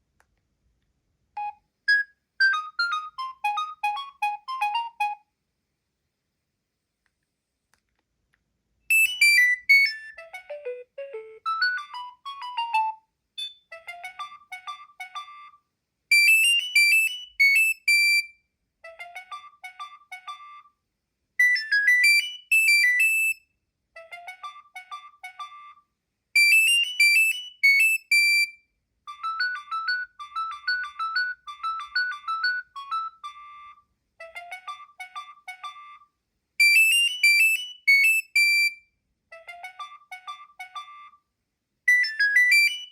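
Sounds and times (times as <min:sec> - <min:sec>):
polyphonic phone ringtone: 0:08.9 - 0:13.6, 0:29.1 - 0:33.8, 0:41.9 - 0:42.9.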